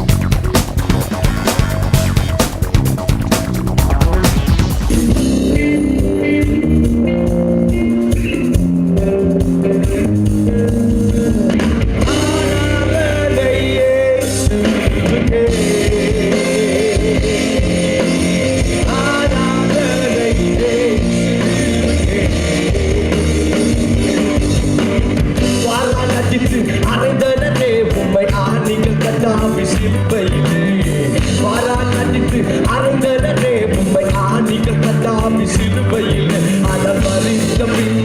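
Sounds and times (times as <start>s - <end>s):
band music with guitar and drums: 0.0s - 38.0s
person singing: 12.0s - 24.4s, 25.5s - 38.0s.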